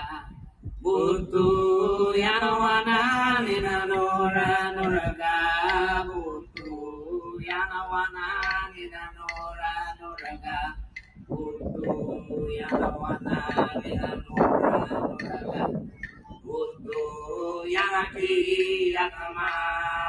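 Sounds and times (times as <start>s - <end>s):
person chanting held notes: 0.0s - 20.0s.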